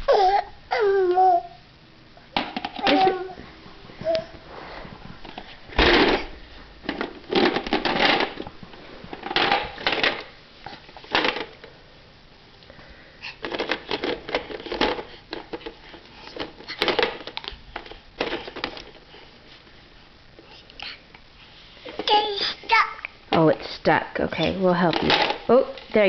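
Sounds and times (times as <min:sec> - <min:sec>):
toys clattering and rattling: 0:05.2 - 0:08.5, 0:09.1 - 0:10.3, 0:11.0 - 0:11.6, 0:13.4 - 0:19.0, 0:24.4 - 0:25.9.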